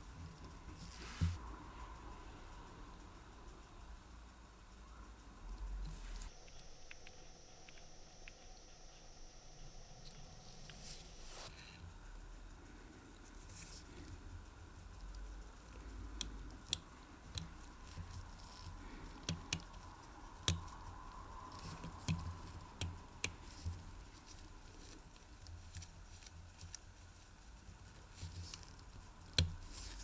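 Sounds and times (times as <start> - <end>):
faint steady hum: 0.0 - 30.0
small tool clicks and taps: 13.6 - 26.9, 28.2 - 30.0.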